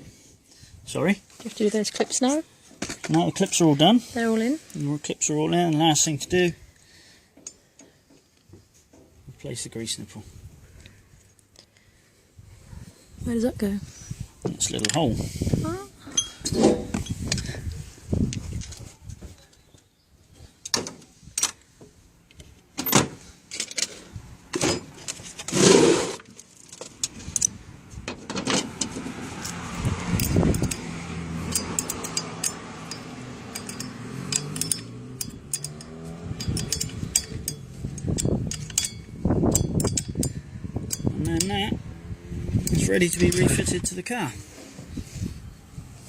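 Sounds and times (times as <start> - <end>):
metal tools clinking and tapping: 16.1 - 17.6, 30.2 - 41.7, 42.6 - 43.7.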